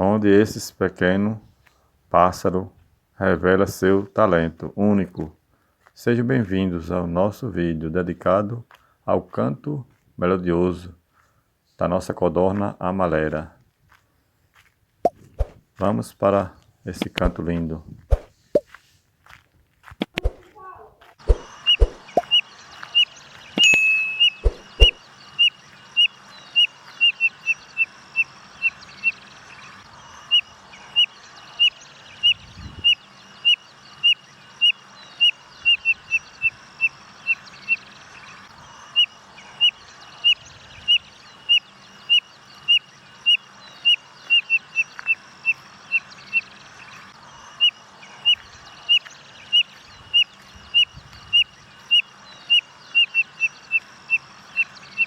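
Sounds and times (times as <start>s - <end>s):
bird high peeping whistles: 21.3s - 29.2s.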